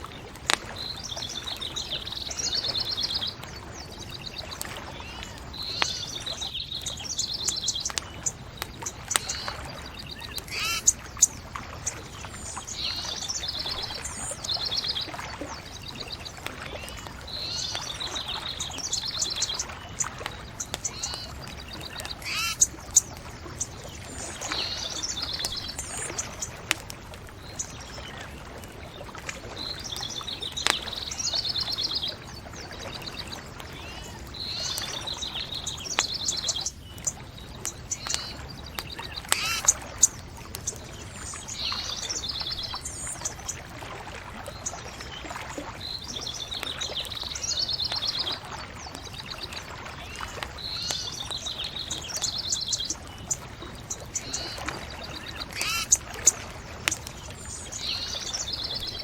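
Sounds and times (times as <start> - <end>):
bonfire crackling: 0.0 - 43.7, 51.2 - 54.8, 55.4 - 59.0
songbirds trilling: 0.0 - 59.0
fire popping: 6.8 - 12.7, 19.9 - 24.5.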